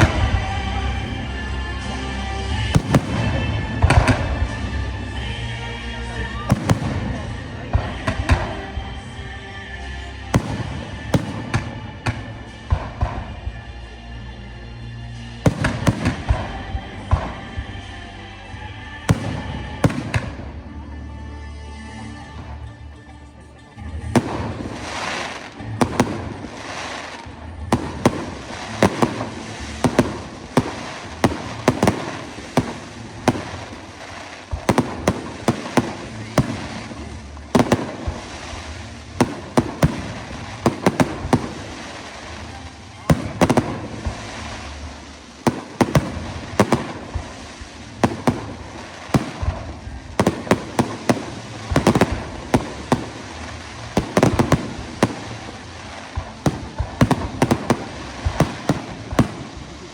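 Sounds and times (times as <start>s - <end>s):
fireworks bangs and crackling: 0.0s - 21.0s, 21.8s - 59.9s.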